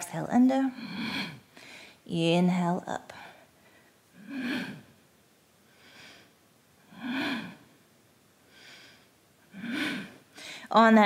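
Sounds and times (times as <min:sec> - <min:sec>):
woman breathing: 0:00.6 - 0:02.1, 0:03.1 - 0:05.0, 0:05.6 - 0:07.8, 0:08.4 - 0:10.8.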